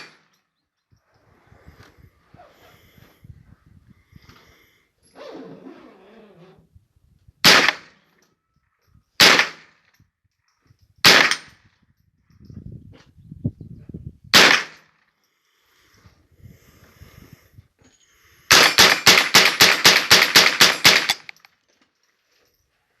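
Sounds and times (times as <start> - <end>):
gunshots: 7.4 - 8.0, 9.2 - 9.7, 11.0 - 11.5, 14.4 - 14.8, 18.5 - 21.3
gun handling noise: 20.8 - 22.5.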